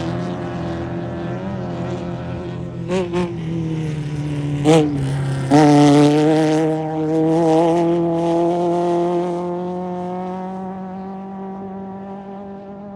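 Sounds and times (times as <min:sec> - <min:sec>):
truck engine at high revs: 0:00.0 - 0:12.9.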